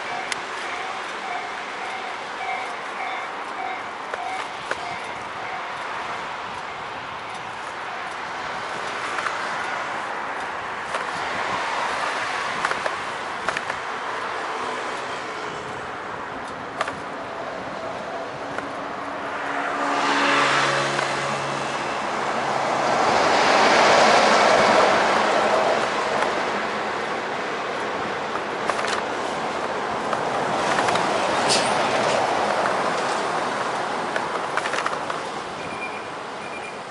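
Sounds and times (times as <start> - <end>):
wind and road noise: 0.0 - 36.9
loud vehicle passing: 17.6 - 27.7
vehicle passing: 18.4 - 27.6.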